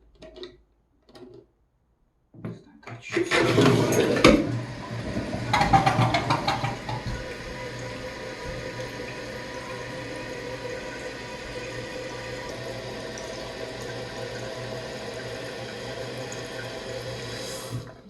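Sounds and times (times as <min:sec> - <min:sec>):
water rushing into toilet tank: 0:02.9 - 0:18.0.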